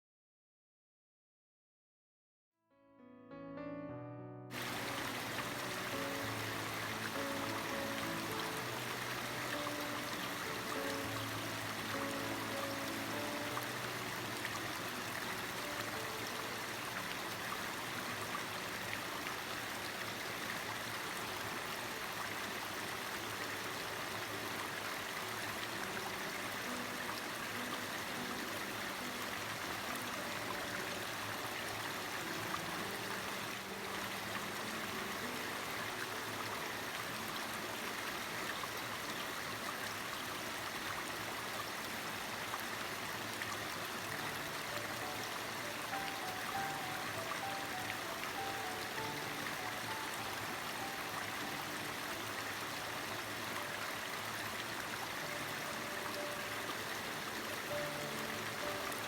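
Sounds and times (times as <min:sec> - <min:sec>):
faint soft music: 0:02.8 - 0:59.0
stream water over rocks: 0:04.5 - 0:59.0.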